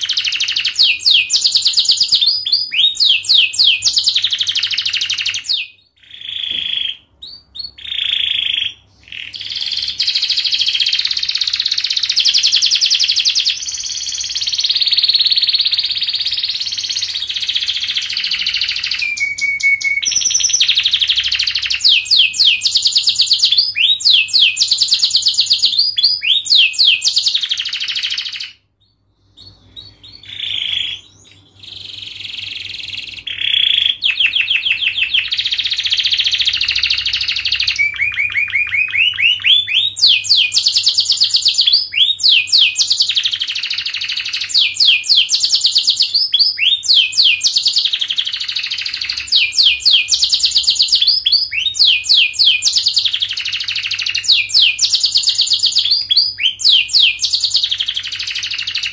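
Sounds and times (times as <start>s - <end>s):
canary singing trills: 0.0s - 58.9s.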